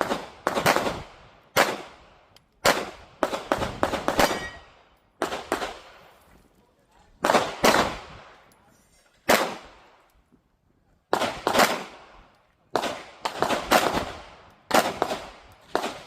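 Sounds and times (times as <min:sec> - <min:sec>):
pistol shots with echo: 0:00.0 - 0:02.0, 0:02.6 - 0:05.9, 0:07.2 - 0:08.2, 0:11.1 - 0:16.0.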